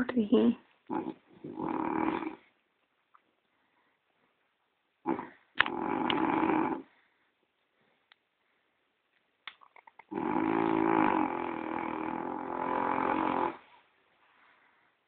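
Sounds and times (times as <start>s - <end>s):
dog snoring: 0.9s - 2.5s, 5.0s - 6.9s, 10.1s - 13.7s.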